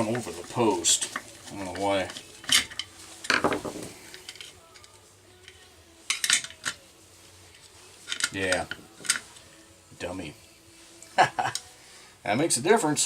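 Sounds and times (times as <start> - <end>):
small metal parts clinking: 2.0 - 4.9, 8.0 - 9.4.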